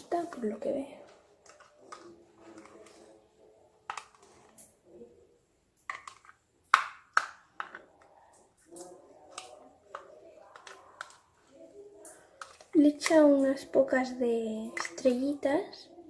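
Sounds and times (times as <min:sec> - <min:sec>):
plastic pots clicking and tapping: 0:00.0 - 0:03.2, 0:03.8 - 0:04.8, 0:05.8 - 0:11.3, 0:12.0 - 0:13.3, 0:14.7 - 0:15.2.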